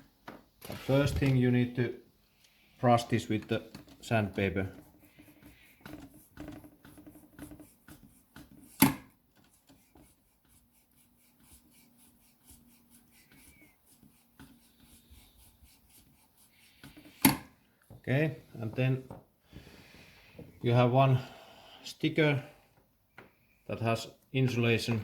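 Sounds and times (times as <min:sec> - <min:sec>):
sandpaper rubbing: 0:04.1 - 0:17.2.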